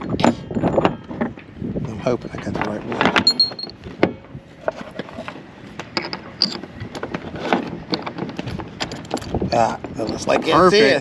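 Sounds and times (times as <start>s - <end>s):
shackle clinking on chain: 3.2s - 3.8s.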